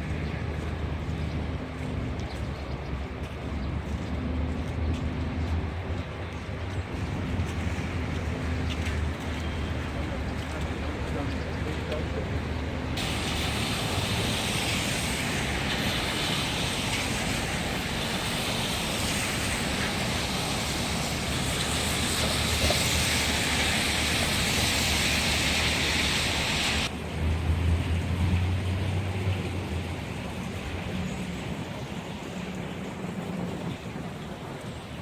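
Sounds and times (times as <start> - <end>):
city street traffic rumbling: 0.0 - 35.0
steady hiss: 12.6 - 26.9.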